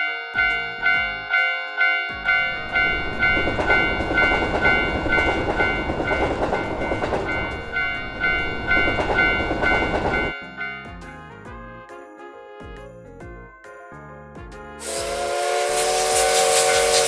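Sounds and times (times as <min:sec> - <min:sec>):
passing train rumbling: 0:00.0 - 0:11.2, 0:14.8 - 0:17.0
railroad crossing bell ringing: 0:00.0 - 0:11.3, 0:14.8 - 0:17.0.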